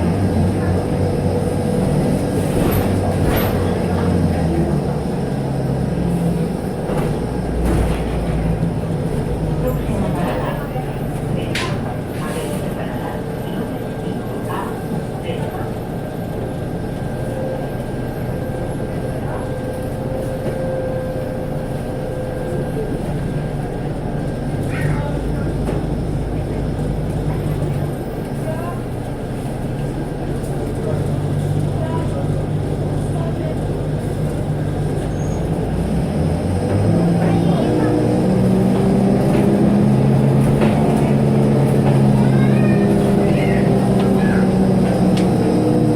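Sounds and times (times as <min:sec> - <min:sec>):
bus engine and road rumble: 0:00.0 - 0:45.9
engine whine: 0:14.9 - 0:45.9.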